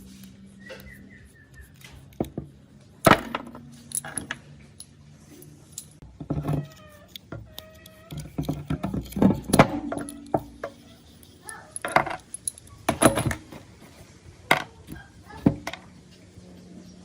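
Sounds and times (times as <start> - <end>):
metal tools clinking: 3.1 - 13.7.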